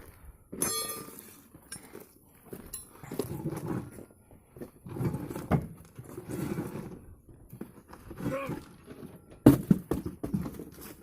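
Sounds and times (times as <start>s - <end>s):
metal clanks from hand tools: 0.6s - 1.9s.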